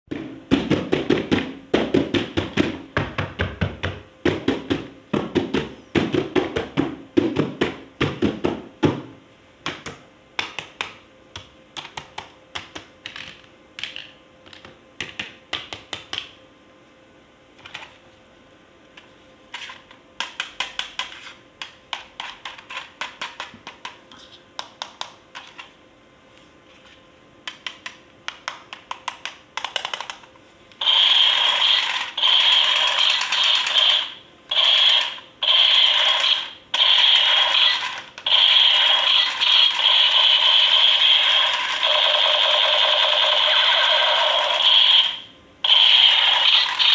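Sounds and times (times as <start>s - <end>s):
plastic toys and packaging clicking: 10.4s - 16.3s, 20.2s - 24.0s, 27.5s - 30.3s.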